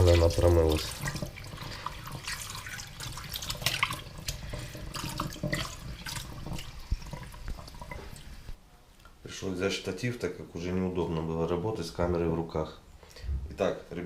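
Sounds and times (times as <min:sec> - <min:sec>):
splashing water: 0:00.0 - 0:08.6
tap water running into bowl: 0:00.0 - 0:08.6.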